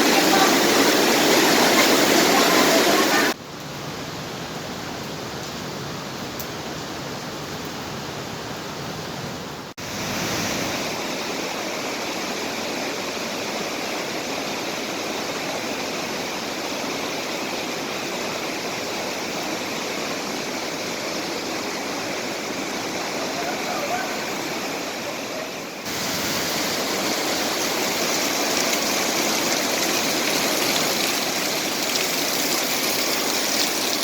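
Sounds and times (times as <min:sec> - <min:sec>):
waterfall rushing: 0:00.0 - 0:03.4, 0:09.8 - 0:34.0.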